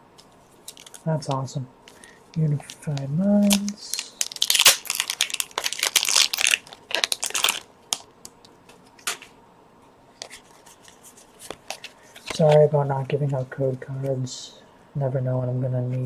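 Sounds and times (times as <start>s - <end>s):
faint clicks and rustles: 0.1s - 1.1s
foil wrapper tearing and crinkling: 3.4s - 8.1s.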